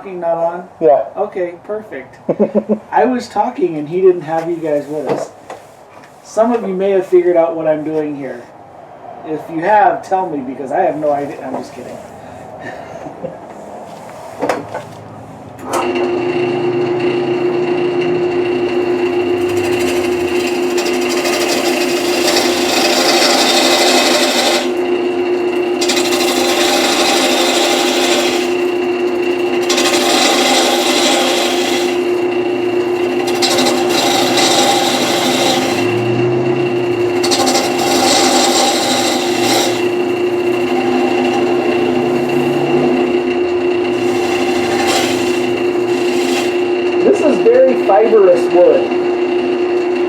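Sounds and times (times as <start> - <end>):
turning tool scraping wood: 3.6 - 6.7, 18.4 - 48.8
wood lathe humming: 15.8 - 50.0.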